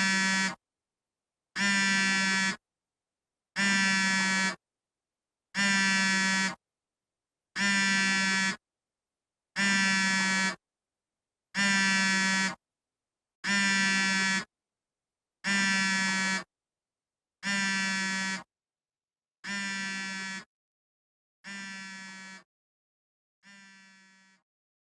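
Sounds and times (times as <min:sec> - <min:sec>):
phone vibrating buzz: 0:00.0 - 0:00.6, 0:01.6 - 0:02.6, 0:03.6 - 0:04.6, 0:05.6 - 0:06.6, 0:07.6 - 0:08.6, 0:09.6 - 0:10.6, 0:11.6 - 0:12.6, 0:13.5 - 0:14.4, 0:15.5 - 0:16.4, 0:17.4 - 0:18.5, 0:19.5 - 0:20.4, 0:21.5 - 0:22.5, 0:23.5 - 0:24.4.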